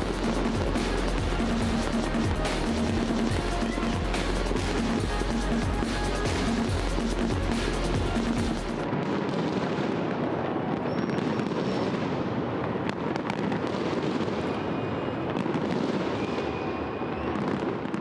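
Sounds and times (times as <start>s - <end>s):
fireworks bangs: 0.0s - 18.0s
fireworks crackling and popping: 0.0s - 18.0s
faint fireworks whistles: 8.8s - 18.0s.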